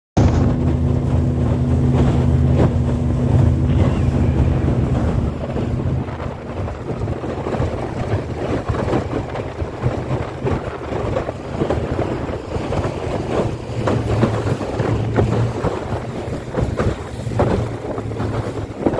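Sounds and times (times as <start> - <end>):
low hum: 0.2 - 9.9
rushing water: 0.2 - 18.9
wind buffeting microphone: 0.2 - 18.9.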